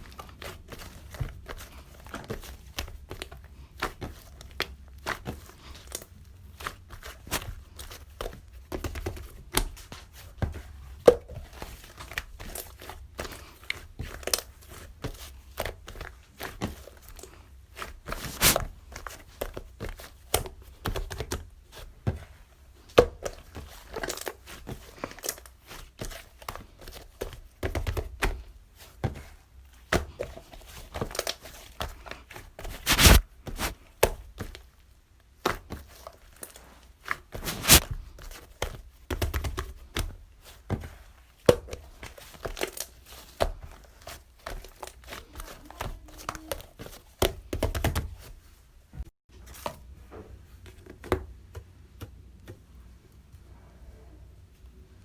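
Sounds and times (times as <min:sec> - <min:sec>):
crinkly material crackling and crumpling: 0:11.3 - 0:22.2, 0:29.6 - 0:34.9, 0:35.7 - 0:47.5.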